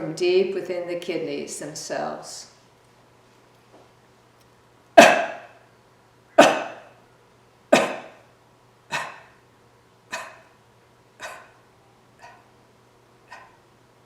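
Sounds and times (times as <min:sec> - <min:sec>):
breathy vocal bursts: 0:08.9 - 0:09.4, 0:10.1 - 0:10.6.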